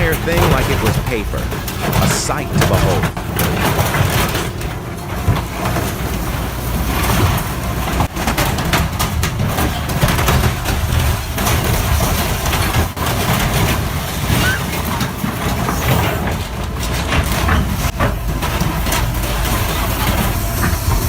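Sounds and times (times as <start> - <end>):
heavy machine engine under load: 0.0 - 21.0
metal crunching and scraping: 0.0 - 21.0.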